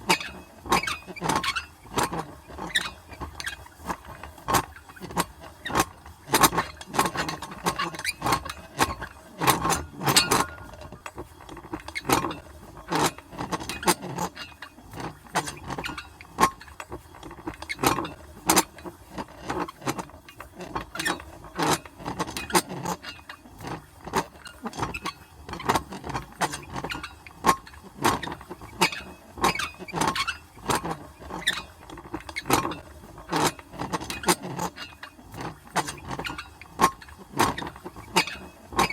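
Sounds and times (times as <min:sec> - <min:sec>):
metal hand crank clanking: 0:06.4 - 0:10.8.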